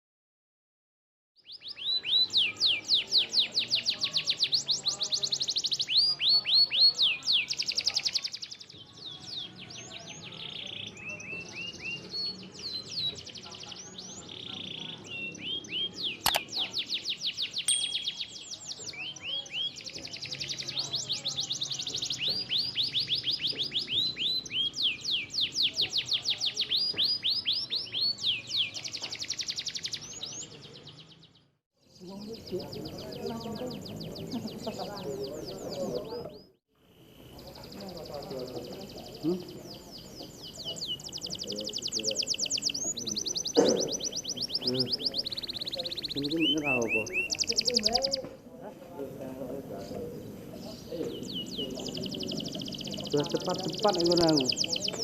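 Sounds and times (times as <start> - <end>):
canary singing trills: 1.4 - 48.4, 49.0 - 55.0
sharp click: 16.3 - 16.6.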